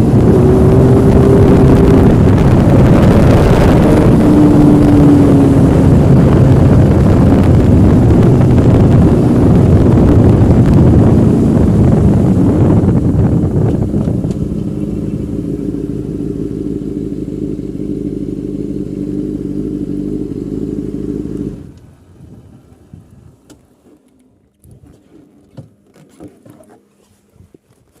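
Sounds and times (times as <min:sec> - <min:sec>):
motorcycle engine idling: 0:11.1 - 0:23.5.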